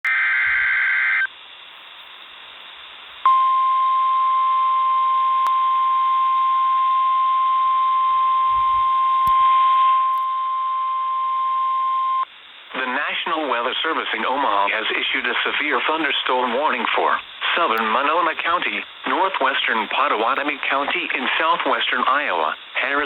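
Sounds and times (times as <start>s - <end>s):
radio hiss: 0.1s - 3.3s, 12.1s - 23.0s.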